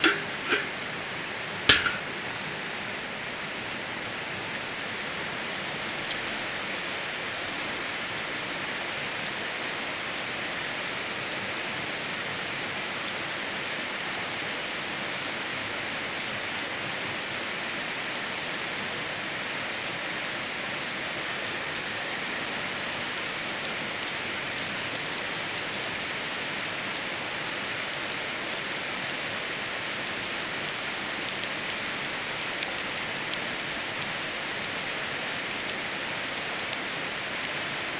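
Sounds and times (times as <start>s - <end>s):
sharp click: 0.0s - 0.9s, 1.7s - 2.2s.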